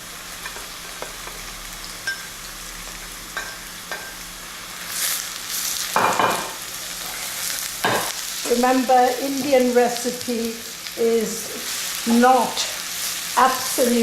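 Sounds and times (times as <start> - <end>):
onions sizzling in a pan: 0.0 - 14.0
stirring and scraping in a pan: 4.9 - 8.2.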